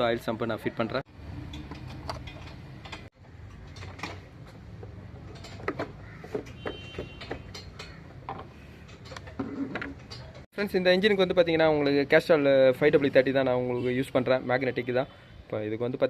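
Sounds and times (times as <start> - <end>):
metallic tool clicks and knocks: 1.4 - 10.4.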